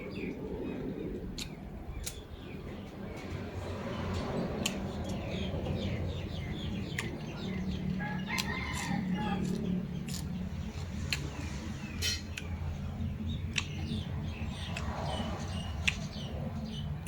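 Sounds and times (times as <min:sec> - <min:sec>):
small birds chirping: 0:00.0 - 0:17.0
steady low hum: 0:00.0 - 0:17.0
rooster crowing: 0:08.0 - 0:09.6.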